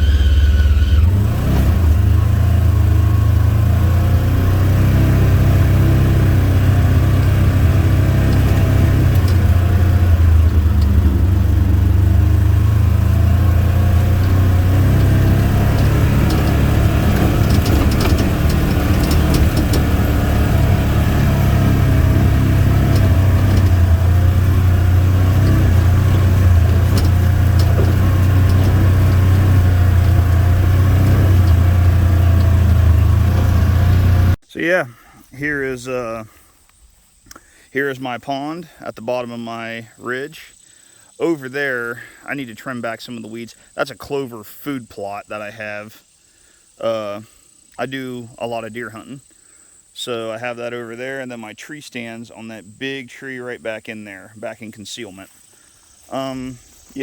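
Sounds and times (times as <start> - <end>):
utility vehicle engine running: 0.0 - 34.4
light rattling clicks: 7.6 - 12.2, 13.4 - 33.8.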